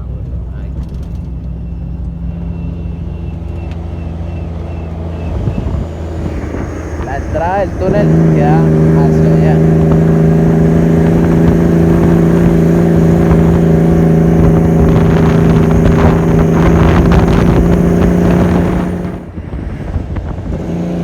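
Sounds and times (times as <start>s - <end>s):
truck diesel engine running: 0.0s - 21.0s.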